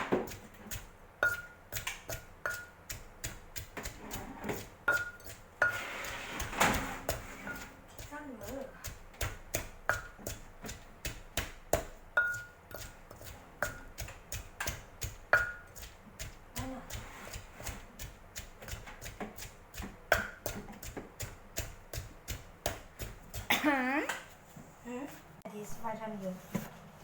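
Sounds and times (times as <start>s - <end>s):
knife chopping on cutting board: 0.0s - 23.5s.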